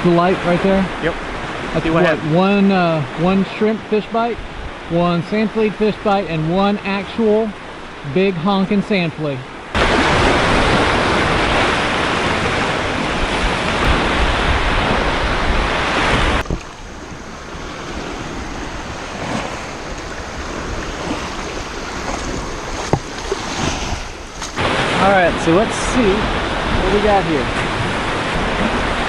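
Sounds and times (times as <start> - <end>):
surf washing on beach: 0.0 - 29.0
wind buffeting microphone: 4.3 - 5.0, 9.5 - 29.0.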